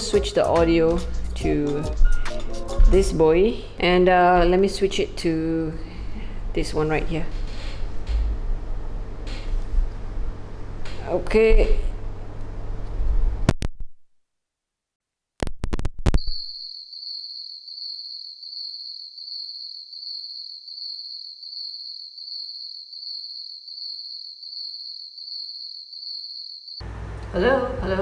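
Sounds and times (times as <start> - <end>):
crickets chirring: 16.2 - 26.9.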